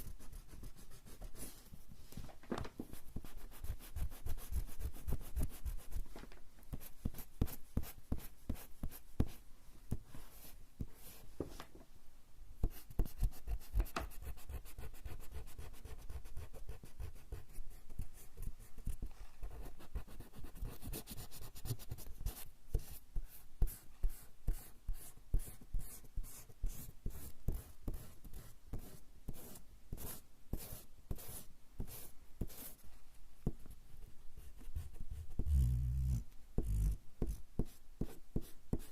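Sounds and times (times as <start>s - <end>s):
eraser rubbing on paper: 34.8s - 37.8s.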